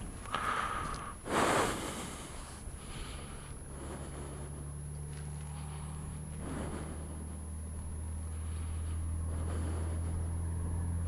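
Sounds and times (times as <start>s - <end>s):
motorcycle engine rumbling: 0.0s - 11.0s
soft breath near microphone: 0.0s - 11.0s.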